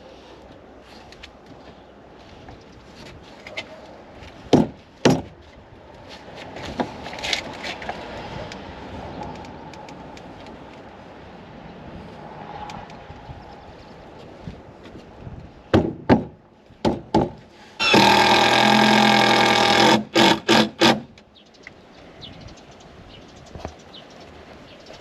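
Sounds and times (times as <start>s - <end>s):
handheld power tool running: 17.8s - 21.0s.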